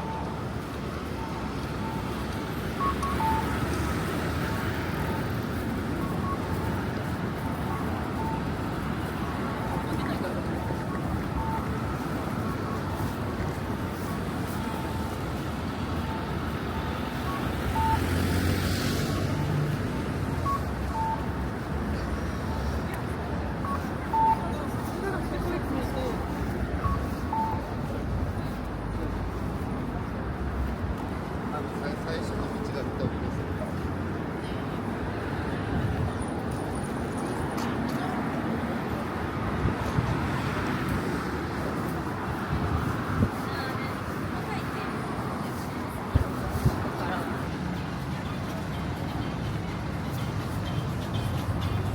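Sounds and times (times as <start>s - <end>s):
crowd noise: 0.0s - 51.9s
traffic: 0.0s - 51.9s
short electronic beeps: 2.8s - 15.2s, 15.8s - 18.3s, 19.0s - 28.0s
vehicle passing: 13.6s - 30.4s.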